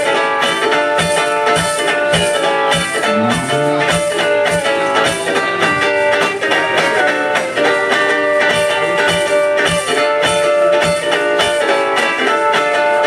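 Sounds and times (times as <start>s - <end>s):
amplified guitar chords: 2.9s - 9.4s
steady drum beat: 3.0s - 9.4s.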